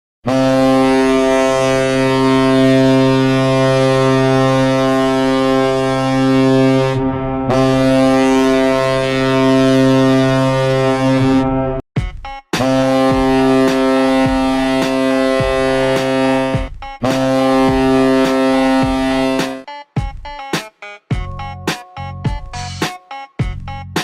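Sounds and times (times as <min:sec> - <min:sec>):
goal horn blaring: 0:00.3 - 0:11.8, 0:12.6 - 0:19.7.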